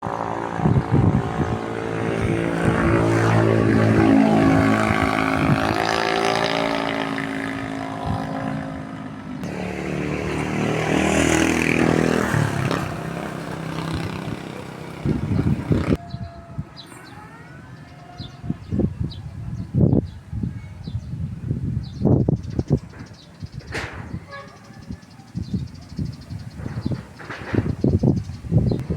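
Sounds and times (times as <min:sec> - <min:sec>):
small engine passing by: 0:00.0 - 0:16.0.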